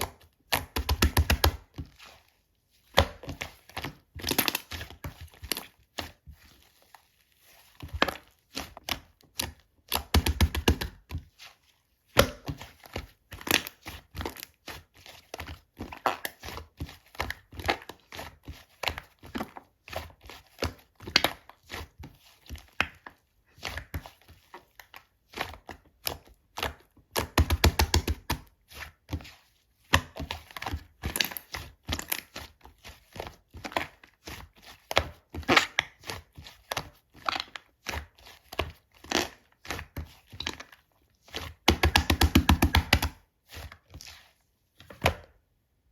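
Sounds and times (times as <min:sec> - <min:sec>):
slime squeezed with sticky pops: 0:41.4 - 0:43.2.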